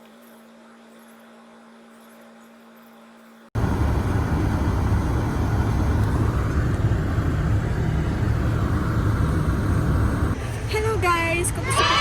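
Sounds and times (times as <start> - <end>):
faint steady hum: 0.0 - 12.0
car and road noise rumble: 3.6 - 12.0
wind buffeting: 3.6 - 12.0.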